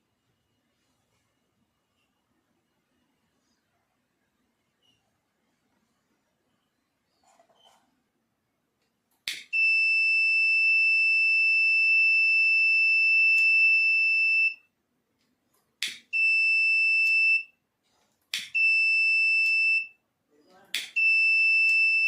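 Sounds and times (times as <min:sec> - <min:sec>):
fire alarm buzzer: 0:09.5 - 0:14.7, 0:16.1 - 0:17.6, 0:18.5 - 0:20.0, 0:21.0 - 0:22.0.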